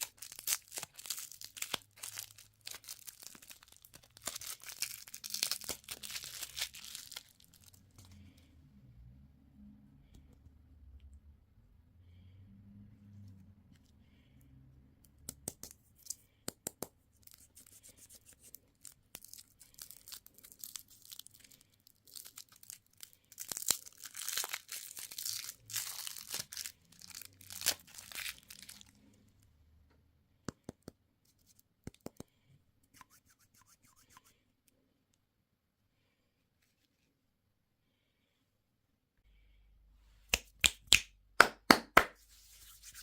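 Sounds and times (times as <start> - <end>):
candy wrapper tearing and crinkling: 0.0 - 7.9, 18.7 - 29.0.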